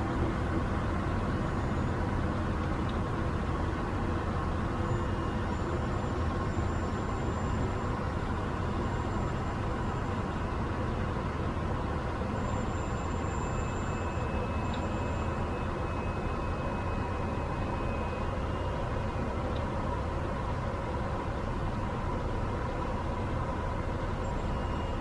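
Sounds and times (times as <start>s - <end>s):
turboprop aircraft engine: 0.0s - 25.0s.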